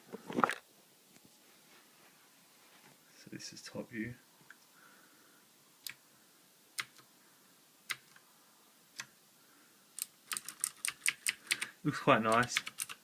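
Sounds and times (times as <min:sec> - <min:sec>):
mechanical keyboard clicks: 0:10.0 - 0:11.7, 0:12.3 - 0:13.0.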